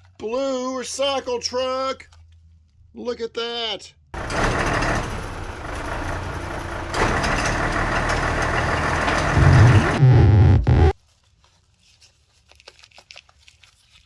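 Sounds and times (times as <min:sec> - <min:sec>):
diesel truck engine running: 0:04.2 - 0:11.0.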